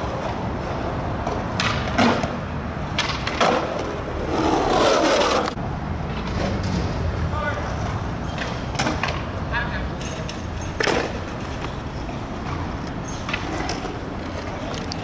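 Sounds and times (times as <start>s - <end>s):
skateboard clacks: 0.0s - 15.0s
skateboard wheels rolling on pavement: 0.0s - 15.0s
skateboard scrape: 3.0s - 7.1s, 10.5s - 15.0s.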